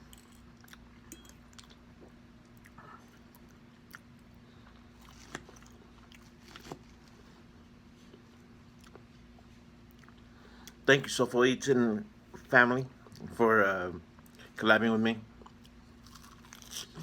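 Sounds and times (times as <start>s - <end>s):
person chewing food: 0.0s - 10.8s, 15.4s - 17.0s
faint steady hum: 0.0s - 17.0s.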